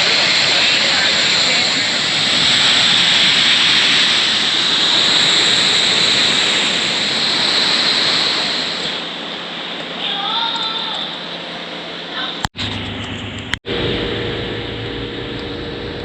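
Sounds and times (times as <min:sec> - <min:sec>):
waterfall rushing into pool: 0:00.0 - 0:09.2.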